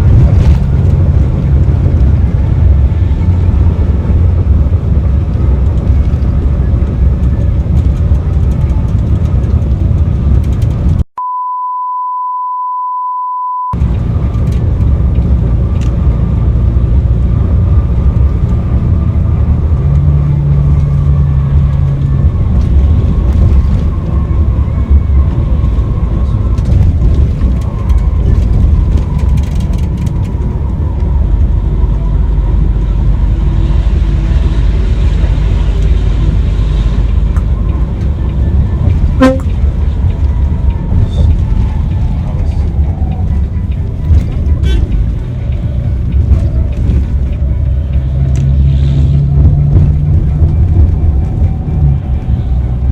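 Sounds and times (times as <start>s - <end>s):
bus engine and road rumble: 0.0s - 11.1s, 13.5s - 52.9s
electronic beep: 11.2s - 13.8s
low steady tone: 11.2s - 13.8s, 39.2s - 40.1s.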